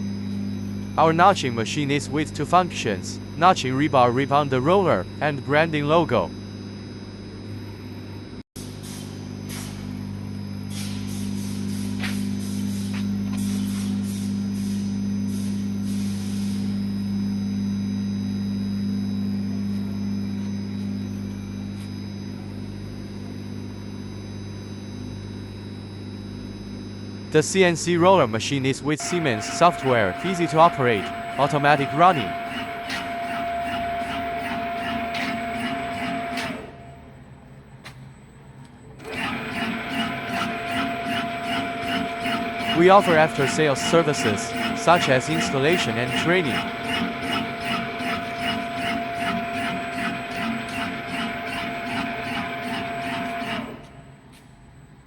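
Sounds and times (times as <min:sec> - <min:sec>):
electric machine hum: 0:00.0 - 0:55.0
machine cutting strokes: 0:29.0 - 0:37.0, 0:39.0 - 0:54.1.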